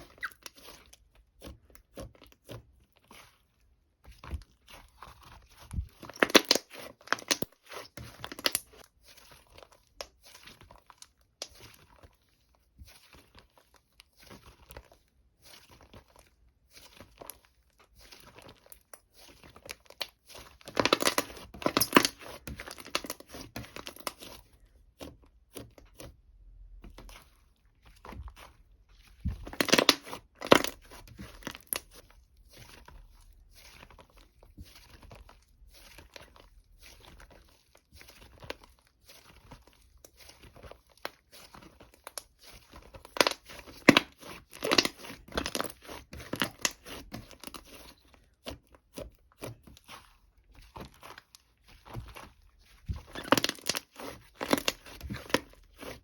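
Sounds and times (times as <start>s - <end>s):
crackly material crinkling and tearing: 0.0s - 56.0s.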